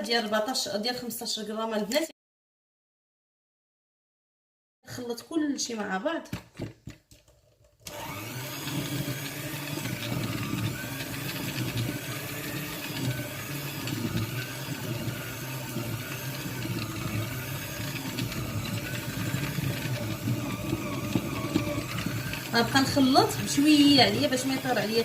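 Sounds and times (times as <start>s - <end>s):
electric mixer beating batter: 7.6s - 25.0s.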